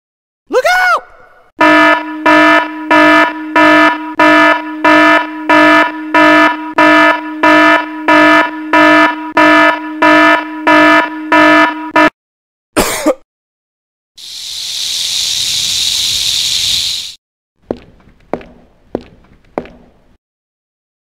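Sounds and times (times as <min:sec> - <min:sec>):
electronic alarm buzzer beeping: 0:01.6 - 0:12.1.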